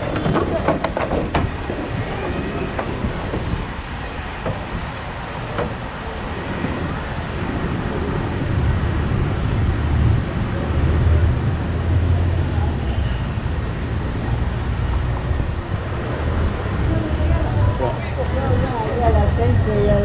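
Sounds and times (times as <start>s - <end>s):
city traffic noise: 0.0s - 20.0s
vehicle engine rumble: 0.0s - 20.0s.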